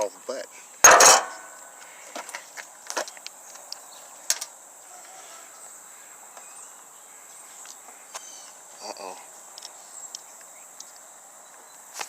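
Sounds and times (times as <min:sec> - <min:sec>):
crickets chirping: 0:00.0 - 0:12.0.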